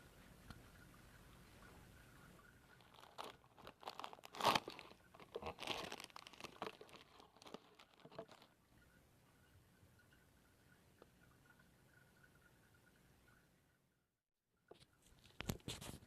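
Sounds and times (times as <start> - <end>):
plastic wrapper crinkling and tearing: 2.7 - 8.6.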